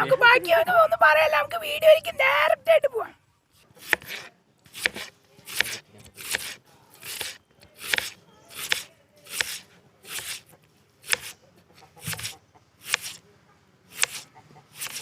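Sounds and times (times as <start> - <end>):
knife chopping on cutting board: 3.8 - 10.4, 11.0 - 11.3, 12.0 - 13.2, 14.0 - 14.2.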